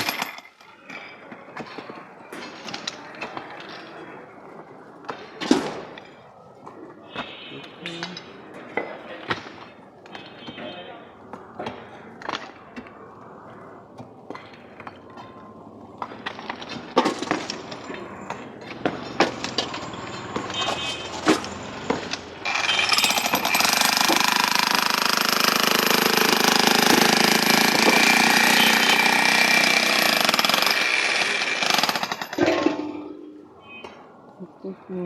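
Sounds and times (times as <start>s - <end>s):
jackhammer hammering concrete: 0.0s - 0.4s, 21.3s - 32.7s
knocks and clinks: 0.0s - 1.2s, 18.9s - 24.2s.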